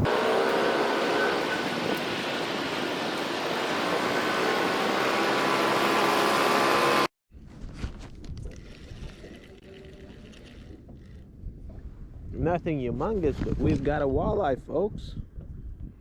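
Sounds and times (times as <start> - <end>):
boat motor running: 0.0 - 7.1.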